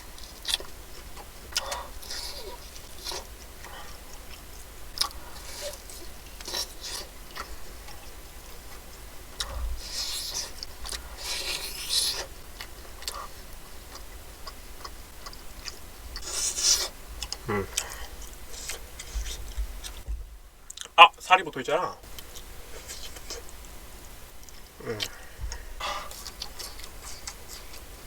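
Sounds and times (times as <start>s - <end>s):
crunchy bites and chewing: 0.0s - 20.1s, 24.4s - 28.0s.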